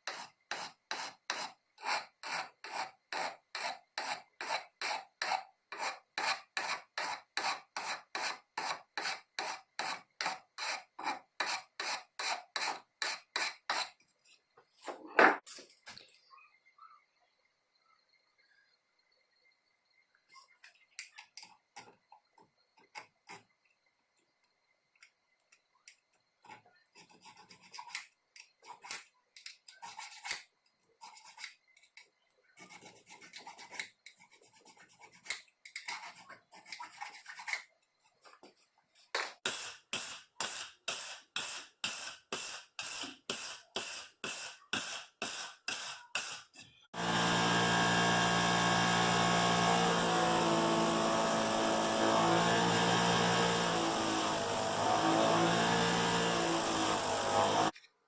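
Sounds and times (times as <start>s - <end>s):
rubbing strokes on workpiece: 39.5s - 57.7s
power tool running: 47.0s - 57.7s.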